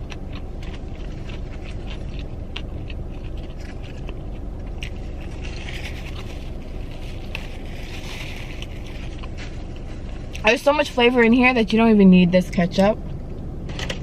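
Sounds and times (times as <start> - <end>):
chewing and crunching food: 0.0 - 10.7
steady low rumble: 0.0 - 14.0.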